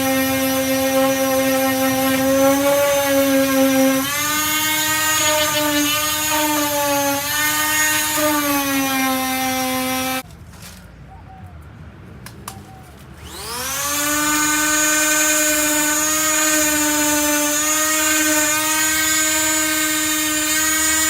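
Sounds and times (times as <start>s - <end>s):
power sander running: 0.0s - 10.2s, 13.2s - 21.0s.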